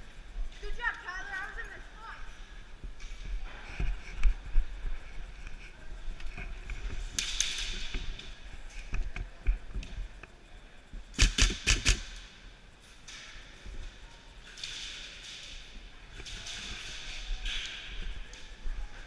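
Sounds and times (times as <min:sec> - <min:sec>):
airsoft gun shots: 0:11.1 - 0:12.2.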